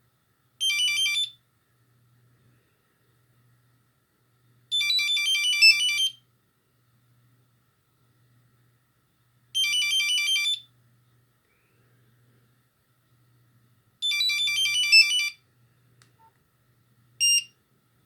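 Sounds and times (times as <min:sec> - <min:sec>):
mobile phone ringtone beeping: 0:00.6 - 0:01.3, 0:04.7 - 0:06.2, 0:09.6 - 0:10.6, 0:14.0 - 0:15.4, 0:17.2 - 0:17.5.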